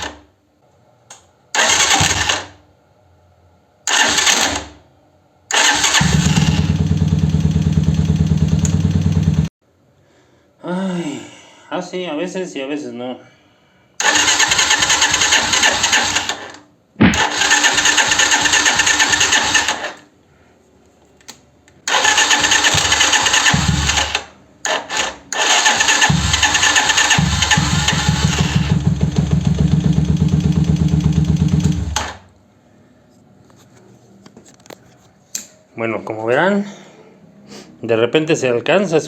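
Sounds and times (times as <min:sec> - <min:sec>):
motorcycle starter cranking: 0:01.6 - 0:02.6, 0:03.9 - 0:04.8, 0:05.5 - 0:09.5, 0:14.0 - 0:16.5, 0:17.2 - 0:20.0, 0:21.9 - 0:32.2.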